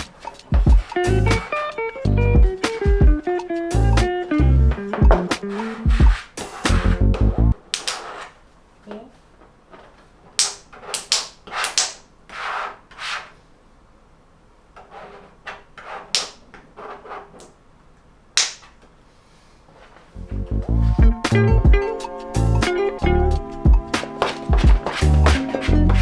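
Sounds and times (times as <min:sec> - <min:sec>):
vinyl film rustling swishes: 0:00.0 - 0:01.8, 0:04.7 - 0:07.0, 0:24.0 - 0:26.0.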